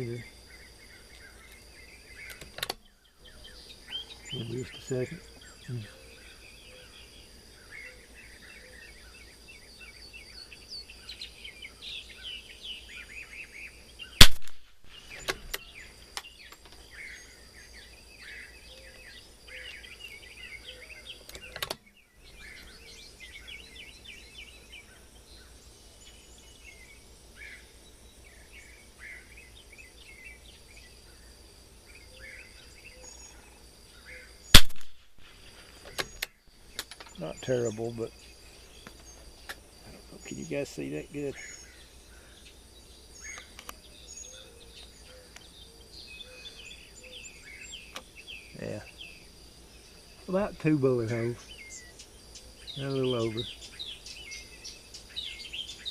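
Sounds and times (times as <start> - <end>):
small birds chirping: 0.0 - 55.9
rifle shot: 14.2 - 14.8, 34.6 - 35.2.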